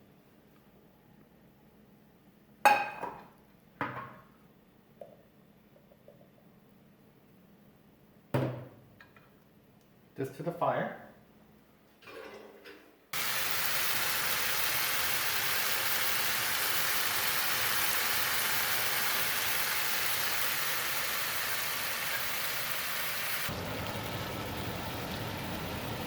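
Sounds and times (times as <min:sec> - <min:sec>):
food sizzling in a frying pan: 0:13.2 - 0:26.0.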